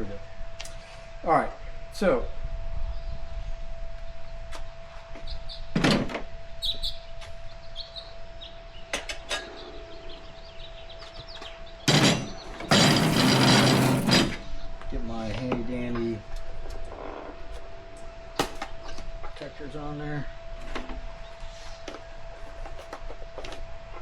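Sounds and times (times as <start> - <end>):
tire scraping rub: 12.8 - 14.5.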